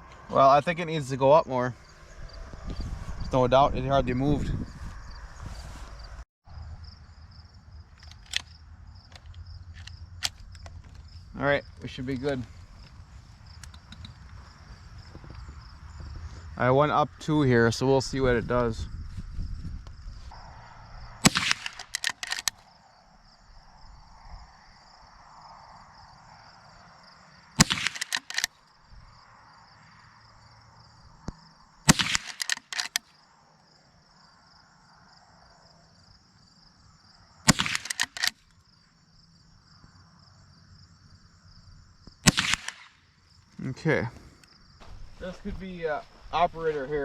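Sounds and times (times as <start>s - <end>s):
insect chirring: 4.9s - 5.4s, 6.0s - 16.6s, 18.9s - 45.3s
rifle lever clicks: 8.0s - 11.0s, 21.2s - 22.6s, 27.6s - 28.5s, 31.9s - 33.0s, 37.5s - 38.4s
rifle shots: 21.2s - 22.6s, 27.6s - 28.5s, 31.9s - 33.0s, 37.5s - 38.4s, 42.2s - 43.0s.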